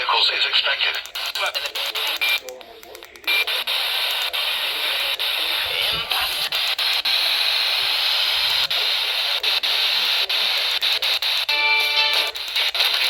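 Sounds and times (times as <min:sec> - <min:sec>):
computer voice alert: 0:00.0 - 0:06.6
loud radio static hiss: 0:00.0 - 0:13.0.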